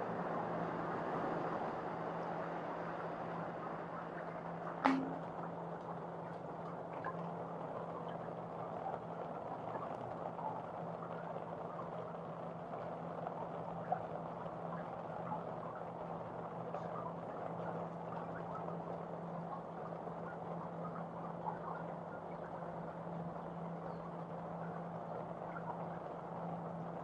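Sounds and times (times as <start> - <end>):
constant low hum: 0.0 - 27.0
drips and taps: 4.8 - 5.5.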